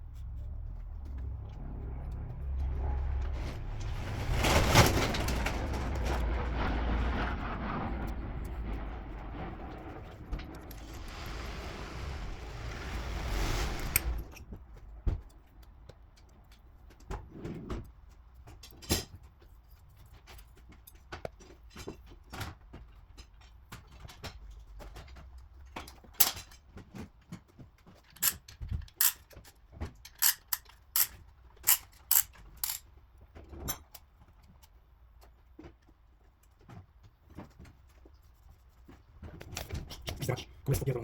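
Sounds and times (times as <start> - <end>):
metal tools clinking: 28.1 - 29.3, 30.1 - 32.8.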